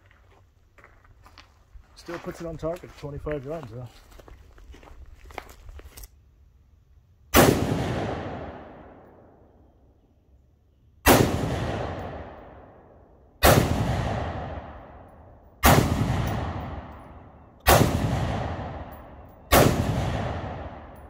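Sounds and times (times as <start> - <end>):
rifle shots with echo: 7.3 - 9.4, 11.0 - 21.0.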